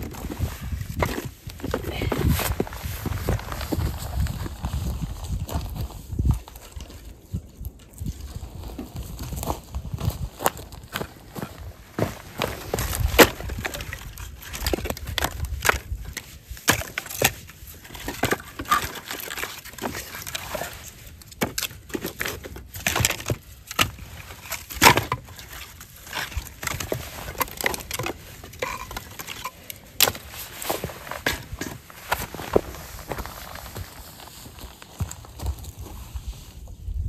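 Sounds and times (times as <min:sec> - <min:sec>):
wind rumble on microphone: 0:00.0 - 0:11.8, 0:12.6 - 0:16.2, 0:35.4 - 0:37.0
footsteps crunching through snow: 0:00.0 - 0:13.7, 0:29.8 - 0:36.8.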